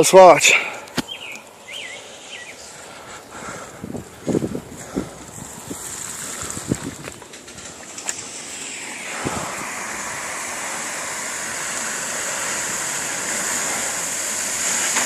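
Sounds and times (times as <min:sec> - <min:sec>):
car tyres splashing through water: 0:04.1 - 0:15.0.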